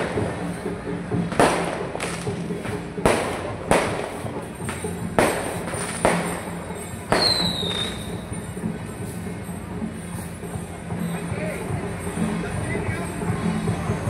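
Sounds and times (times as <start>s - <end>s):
sharp echoing bangs: 1.3s - 8.0s.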